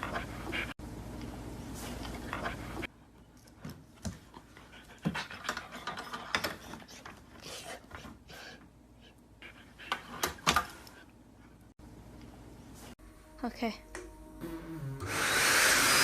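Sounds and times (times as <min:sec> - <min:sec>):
dog panting: 0:00.0 - 0:00.8.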